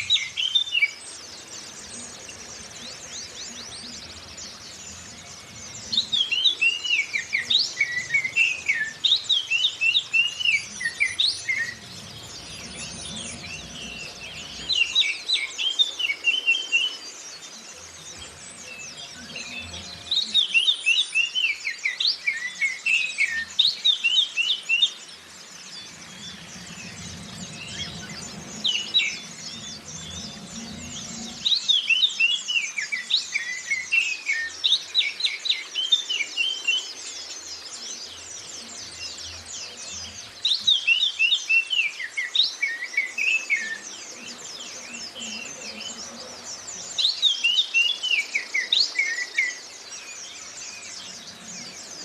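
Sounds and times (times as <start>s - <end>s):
high twittering of small birds: 0.0s - 52.0s
bird singing whistled phrases: 5.4s - 17.1s.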